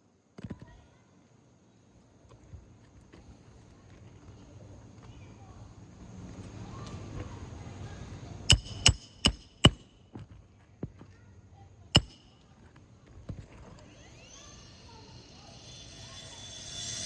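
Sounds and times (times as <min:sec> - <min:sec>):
hammer striking roof: 0:08.5 - 0:09.9, 0:12.0 - 0:12.3.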